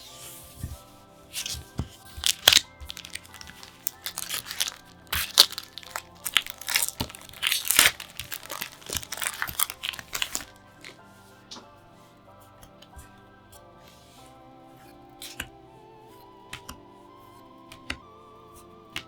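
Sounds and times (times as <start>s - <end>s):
soft background music: 0.0s - 19.0s
packaging crinkling: 1.4s - 11.0s.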